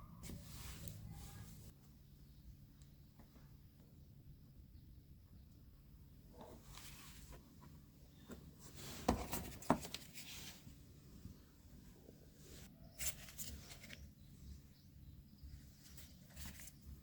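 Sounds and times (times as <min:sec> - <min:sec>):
cardboard rustling and scraping: 0:08.3 - 0:10.8.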